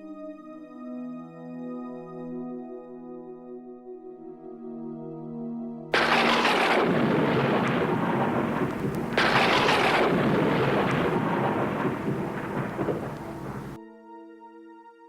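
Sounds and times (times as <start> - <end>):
thunderclaps rumbling: 6.0 - 13.8.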